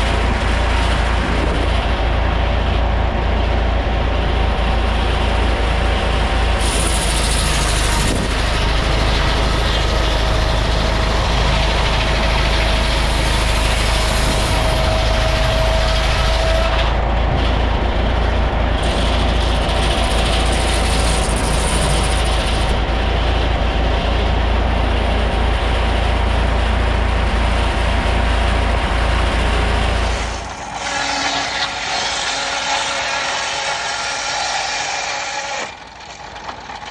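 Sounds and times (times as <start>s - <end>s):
sawmill machinery din with whine: 0.0s - 36.9s.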